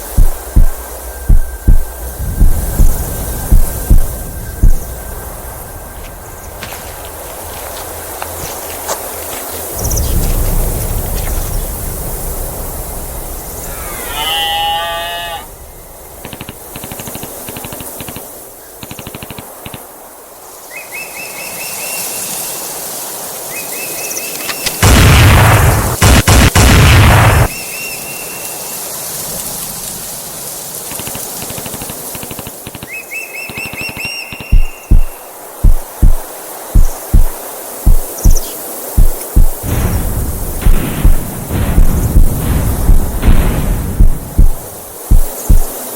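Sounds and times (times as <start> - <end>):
steady background noise: 0.0 - 45.9
noisy burst with sharp cracks: 24.7 - 27.6, 39.0 - 45.7
fast clicking: 30.9 - 32.9.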